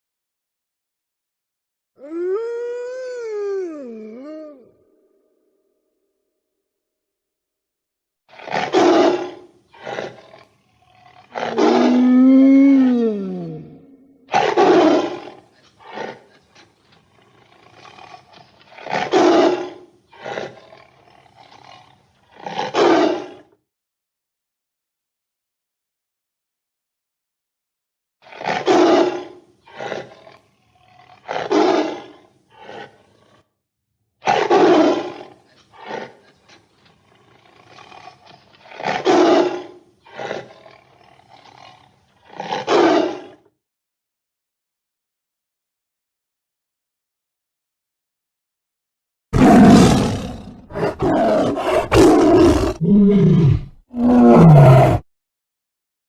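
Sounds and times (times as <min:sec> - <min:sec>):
large animal roaring: 0:08.4 - 0:16.2, 0:49.4 - 0:55.0.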